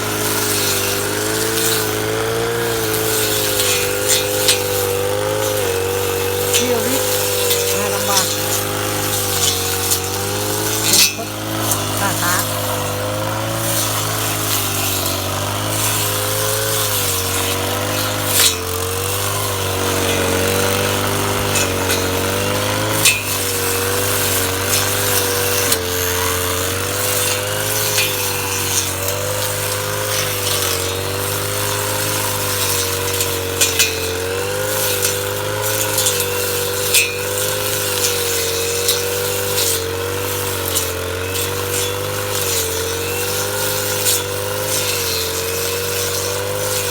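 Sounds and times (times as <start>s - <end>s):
brush cutter running: 0.0s - 46.9s.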